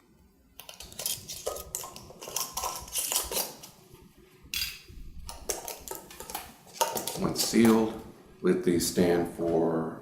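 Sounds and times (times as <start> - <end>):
metal clinking on glass jars: 0.6 - 3.7.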